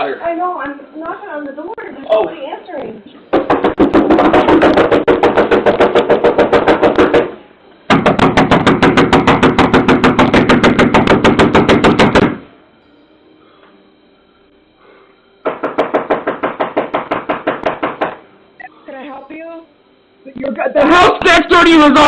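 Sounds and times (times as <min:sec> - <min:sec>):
rapid pounding on a door: 0:03.3 - 0:12.4, 0:15.4 - 0:18.2.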